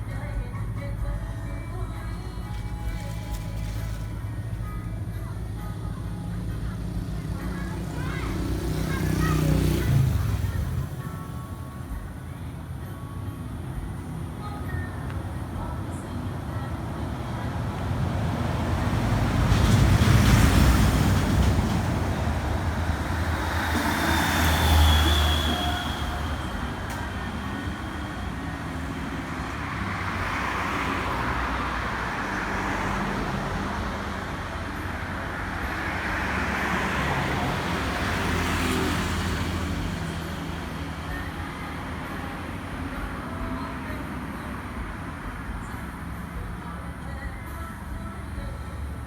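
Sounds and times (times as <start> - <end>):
vehicles passing: 0.0 - 49.0
thin high squeal: 23.6 - 26.8.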